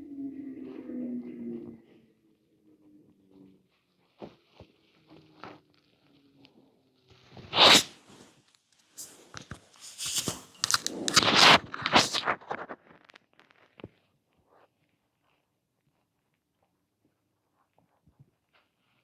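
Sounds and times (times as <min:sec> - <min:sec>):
stomach gurgling and crackling: 0:09.0 - 0:14.5.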